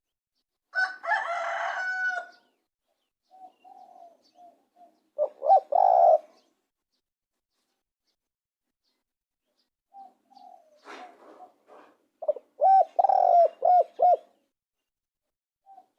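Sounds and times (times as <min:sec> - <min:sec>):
dove cooing: 0:03.3 - 0:06.5, 0:09.9 - 0:14.4, 0:15.7 - 0:15.9
loud bird calls: 0:10.0 - 0:14.4.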